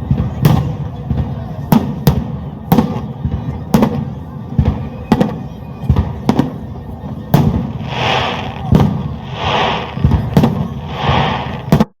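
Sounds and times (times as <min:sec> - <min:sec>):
fireworks bangs: 0:00.0 - 0:11.9
fireworks hiss: 0:07.4 - 0:11.9.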